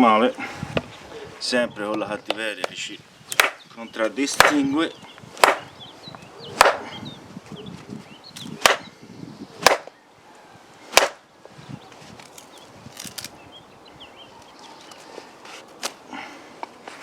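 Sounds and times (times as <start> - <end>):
wooden baton striking a log: 3.3 - 3.6, 5.4 - 5.7, 6.6 - 6.8, 9.6 - 9.9, 10.9 - 11.2.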